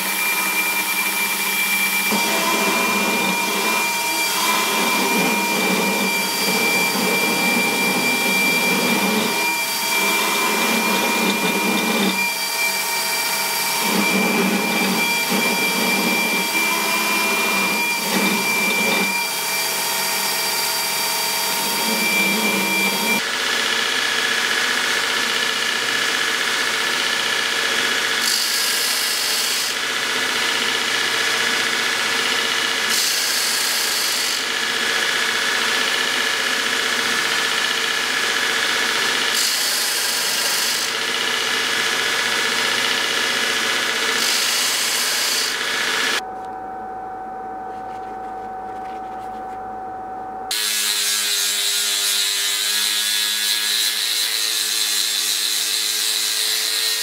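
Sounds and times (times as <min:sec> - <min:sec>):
steady whine: 0:00.0 - 0:19.2, 0:46.1 - 0:50.5
machine sound: 0:00.0 - 0:23.3
power tool running on metal: 0:00.0 - 0:46.2, 0:50.5 - 0:57.0.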